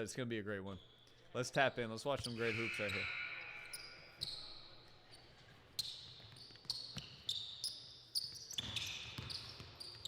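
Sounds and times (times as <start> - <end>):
basketball bouncing on hard court: 8.6 - 10.0.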